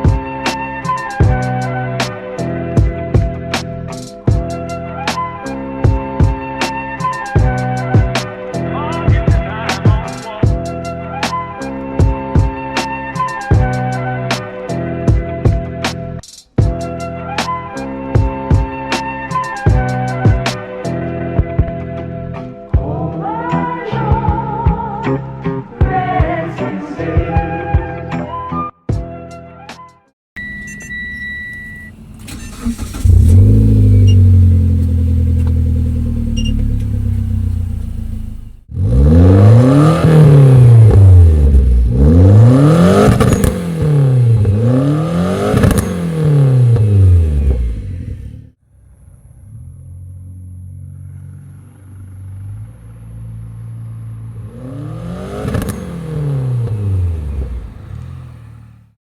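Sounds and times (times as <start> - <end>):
electronic beep: 30.4 - 32.0, 33.9 - 34.3, 36.3 - 36.7
turbocharged car engine revving: 31.9 - 59.0.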